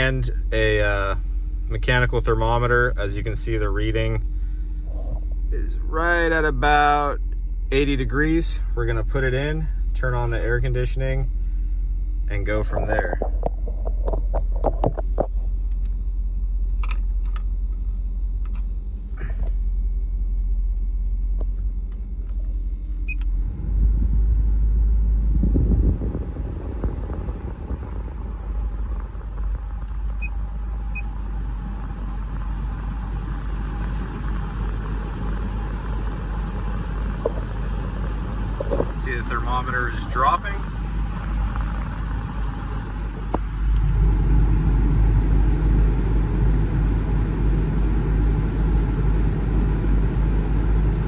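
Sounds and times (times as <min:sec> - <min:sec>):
air conditioning blower rush: 0:00.0 - 0:15.6, 0:21.8 - 0:51.0
car engine idling: 0:00.0 - 0:51.0
climate control clicks: 0:29.8 - 0:30.3.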